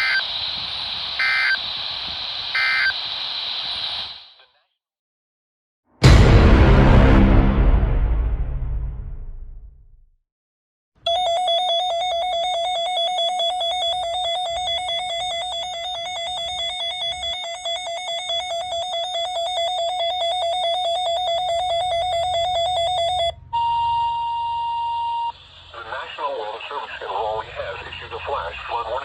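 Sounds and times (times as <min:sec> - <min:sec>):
steady alert tone: 0:00.0 - 0:00.2, 0:01.2 - 0:01.6, 0:02.6 - 0:02.9
warbling electronic alarm tone: 0:00.0 - 0:00.4, 0:01.2 - 0:01.7, 0:02.5 - 0:03.0, 0:11.1 - 0:25.5.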